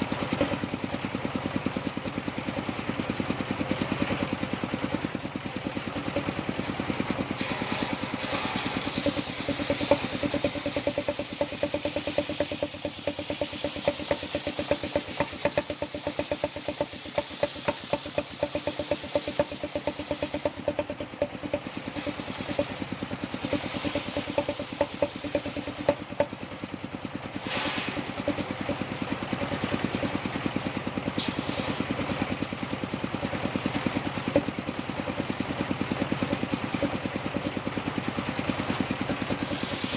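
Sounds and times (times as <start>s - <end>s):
sawmill engine running: 0.0s - 39.9s
hissing bursts: 7.2s - 20.6s, 27.4s - 28.7s, 39.4s - 39.9s.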